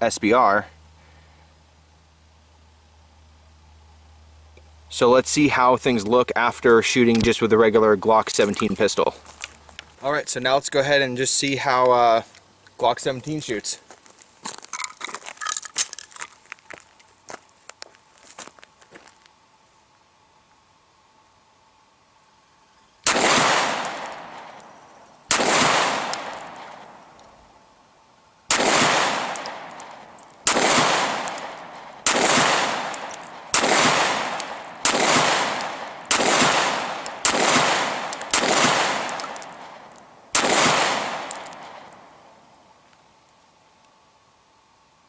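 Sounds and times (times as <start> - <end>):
pistol shots echoing: 23.0 - 24.6, 25.3 - 27.0, 28.5 - 42.1.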